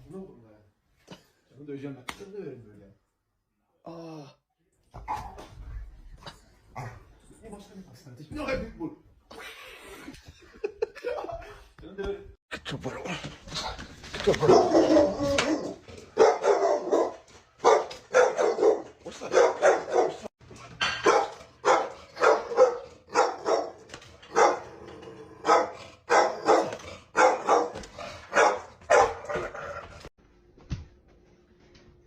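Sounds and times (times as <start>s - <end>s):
dog barking: 14.3s - 24.7s, 25.4s - 29.8s.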